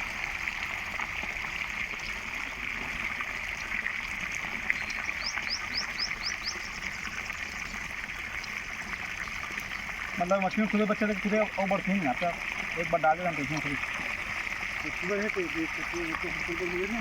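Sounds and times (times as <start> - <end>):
steady outdoor hiss: 0.0 - 17.0
bird chirping: 4.7 - 7.8.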